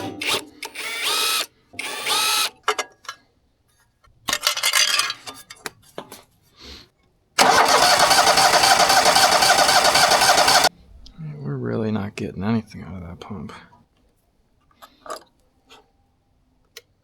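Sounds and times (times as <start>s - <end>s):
engine cranking with electric starter: 7.4s - 10.7s.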